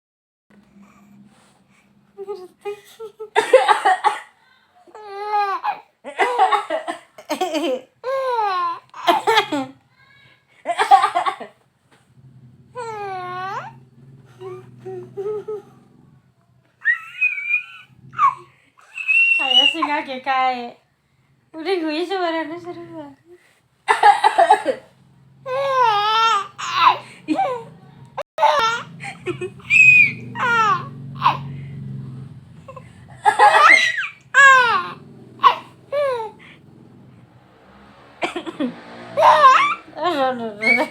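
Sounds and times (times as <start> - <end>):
woman coughing: 3.4 - 4.4, 9.1 - 9.7, 24.1 - 24.9
baby laughing: 16.8 - 20.0, 25.5 - 27.7, 28.4 - 31.5, 32.7 - 36.4, 39.2 - 39.9, 40.6 - 40.9.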